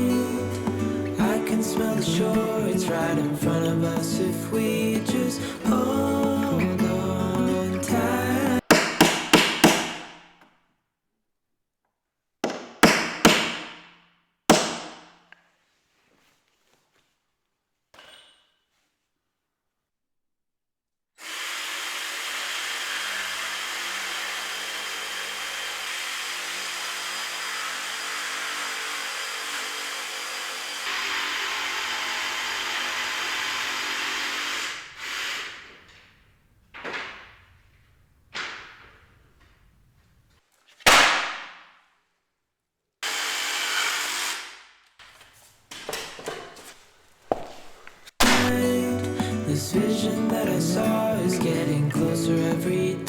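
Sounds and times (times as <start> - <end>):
power tool running: 21.2 - 35.8
power tool trigger bursts: 21.2 - 35.8, 43.0 - 44.7.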